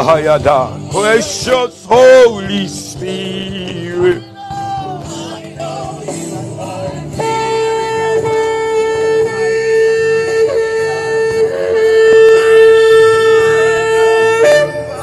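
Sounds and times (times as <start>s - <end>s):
worship music: 0.0s - 15.0s
shofar long held note: 7.2s - 15.0s.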